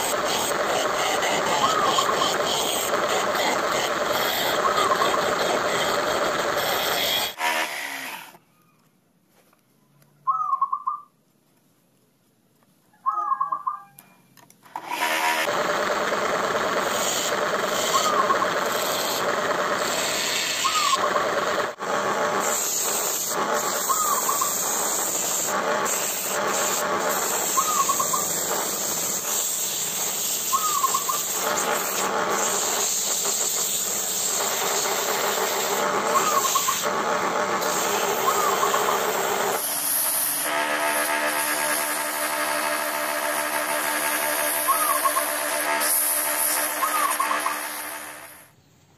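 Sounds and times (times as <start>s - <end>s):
lathe motor running: 0.0s - 7.8s, 14.7s - 48.5s
bird high calls: 10.2s - 11.1s, 12.9s - 14.2s, 23.8s - 24.6s, 27.5s - 28.3s, 30.5s - 31.3s, 36.1s - 36.8s, 44.6s - 45.4s, 46.8s - 47.6s.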